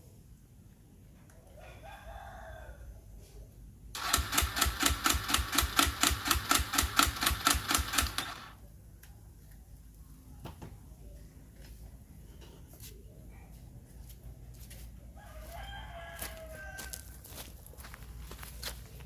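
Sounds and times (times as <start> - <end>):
motorcycle starter cranking: 4.0 - 8.6.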